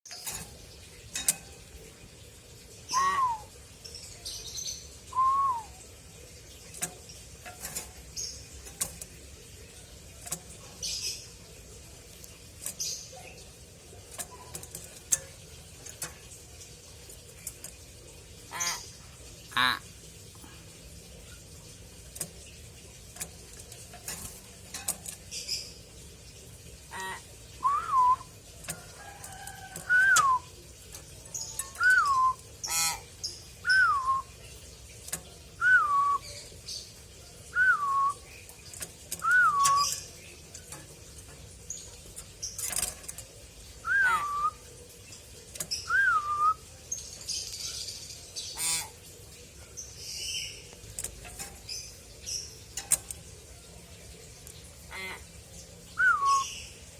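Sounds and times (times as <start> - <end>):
myna whistling: 2.9 - 3.5, 5.1 - 5.7, 27.6 - 28.3, 31.8 - 32.4, 33.7 - 34.3, 35.6 - 36.2, 37.6 - 38.2, 39.2 - 39.9, 43.8 - 44.6, 45.9 - 46.6, 56.0 - 56.5
harsh raspy bird calls: 18.4 - 20.0, 26.8 - 27.9, 31.7 - 34.2, 43.8 - 44.6, 48.2 - 49.2, 54.8 - 55.5.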